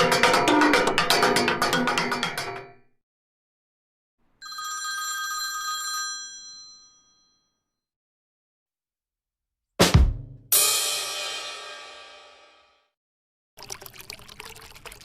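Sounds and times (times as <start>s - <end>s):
telephone bell ringing: 4.4s - 7.8s.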